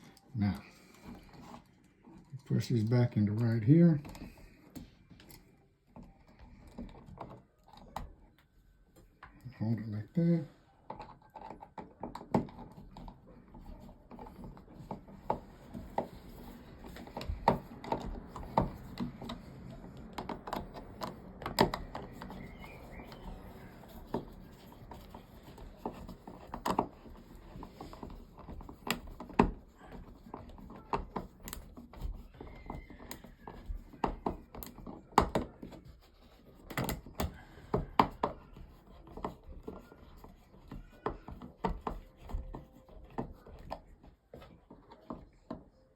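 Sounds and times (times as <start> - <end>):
plastic parts clicking and knocking: 10.8 - 45.8.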